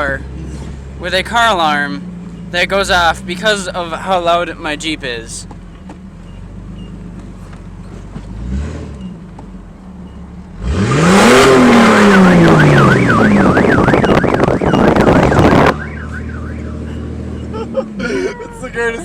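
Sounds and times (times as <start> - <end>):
loud exhaust idling and revving: 0.0 - 19.0
car alarm warbling siren: 11.3 - 17.5.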